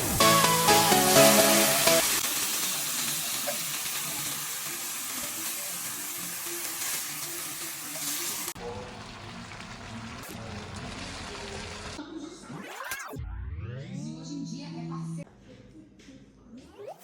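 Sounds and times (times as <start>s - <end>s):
food sizzling in a pan: 0.0s - 12.0s.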